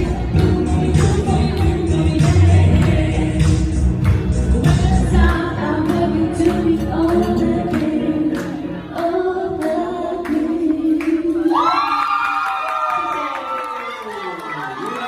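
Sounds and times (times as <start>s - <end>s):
person singing: 0.0s - 11.8s.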